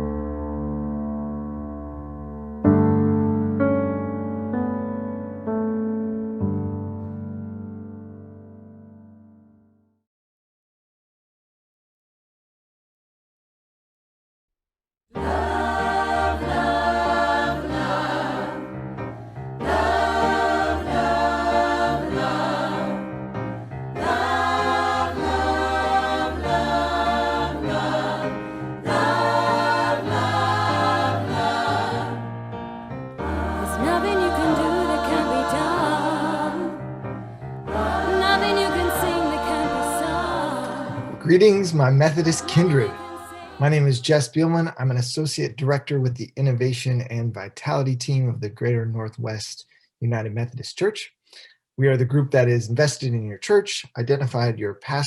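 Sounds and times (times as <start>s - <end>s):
choir singing: 15.2s - 32.4s, 33.2s - 44.2s
sustained low bass notes: 43.6s - 44.9s.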